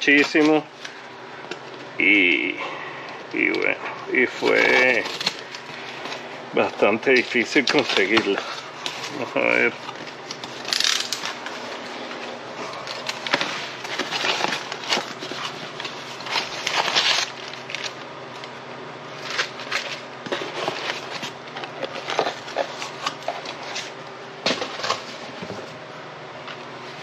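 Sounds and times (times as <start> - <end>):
packaging crackling and scraping: 3.4 - 18.5, 19.1 - 25.1.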